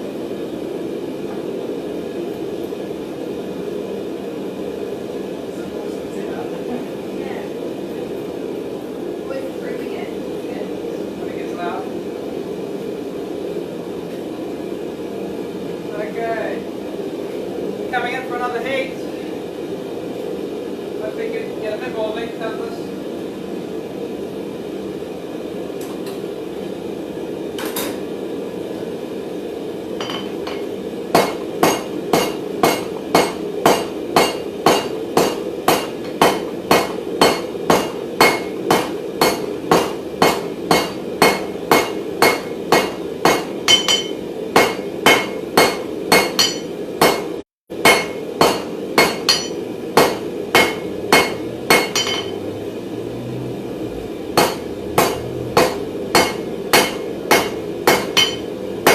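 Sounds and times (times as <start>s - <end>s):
hammer ringing on anvil: 30.0s - 47.2s, 47.8s - 52.4s, 54.4s - 58.9s.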